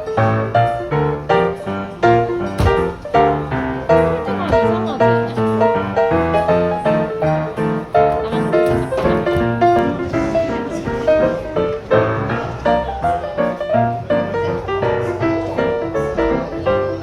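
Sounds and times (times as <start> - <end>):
piano music: 0.0 - 17.0.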